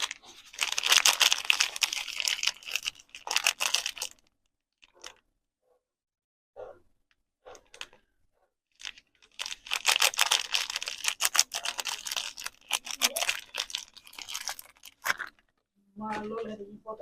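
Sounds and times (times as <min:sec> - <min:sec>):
packaging crinkling and tearing: 0:00.0 - 0:05.2, 0:08.8 - 0:15.6.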